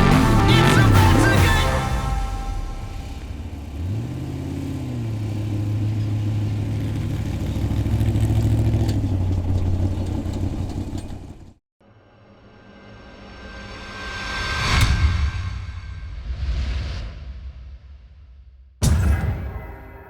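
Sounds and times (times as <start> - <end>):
truck engine revving: 0.0 - 11.6.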